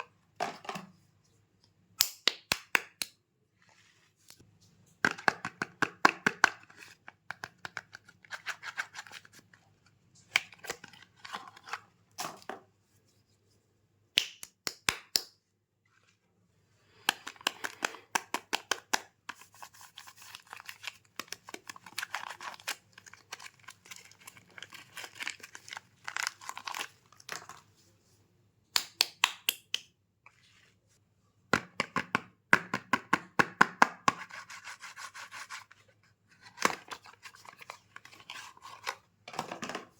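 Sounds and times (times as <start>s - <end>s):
soap packaging crinkling and tearing: 10.2s - 11.9s, 17.0s - 27.7s, 35.0s - 39.0s.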